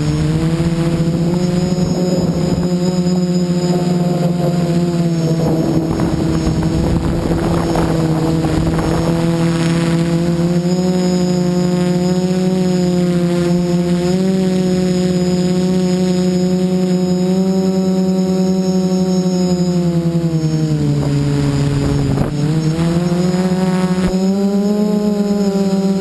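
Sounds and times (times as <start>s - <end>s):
rushing wind noise: 0.0s - 11.7s, 20.7s - 25.3s
drone propellers humming: 0.0s - 26.0s.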